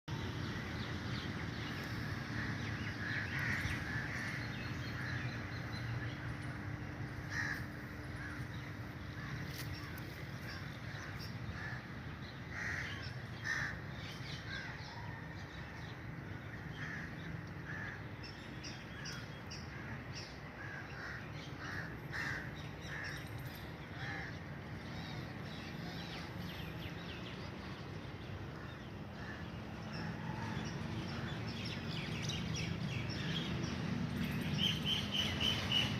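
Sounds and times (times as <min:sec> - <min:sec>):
crows cawing: 0:02.3 - 0:05.2, 0:07.2 - 0:08.4, 0:12.5 - 0:13.8, 0:20.6 - 0:23.3.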